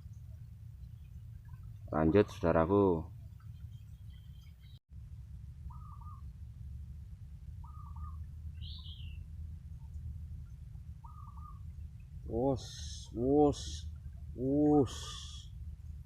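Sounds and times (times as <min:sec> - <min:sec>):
bird calling: 0:00.0 - 0:04.8, 0:05.5 - 0:06.8, 0:07.4 - 0:16.0
steady low rumble: 0:00.0 - 0:16.0.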